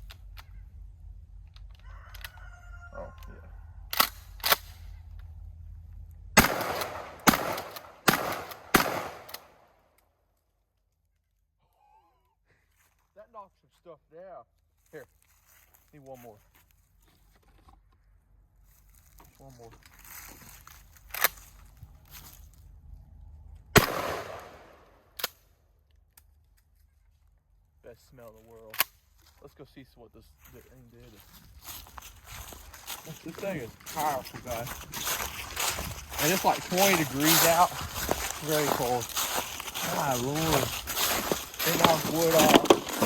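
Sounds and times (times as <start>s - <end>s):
shotgun shots with echo: 6.4s - 9.6s, 23.8s - 24.8s.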